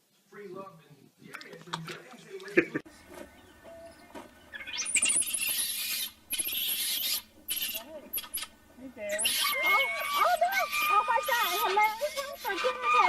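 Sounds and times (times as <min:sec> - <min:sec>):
harsh rasping scratching: 0:04.6 - 0:13.0.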